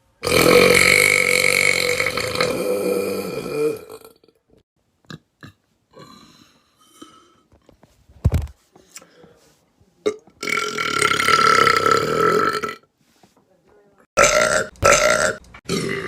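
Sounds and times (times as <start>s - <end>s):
man burping loudly: 0.2s - 7.4s, 10.1s - 12.8s, 14.2s - 16.0s.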